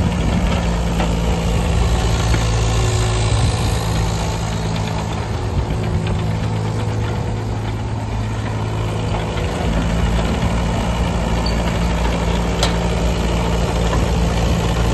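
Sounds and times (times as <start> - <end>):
diesel engine idling: 0.0 - 14.9.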